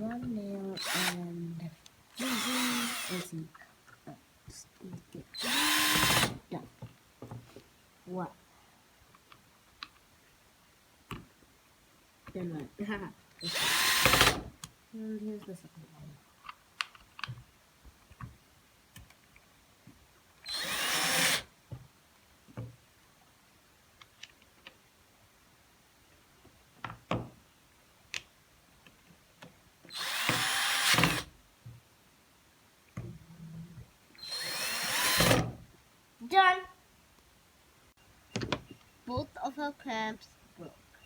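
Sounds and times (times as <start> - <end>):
power drill bursts: 0.8 - 1.2, 2.2 - 3.3, 5.4 - 6.4, 13.4 - 14.5, 20.5 - 21.5, 29.9 - 31.3, 34.2 - 35.5.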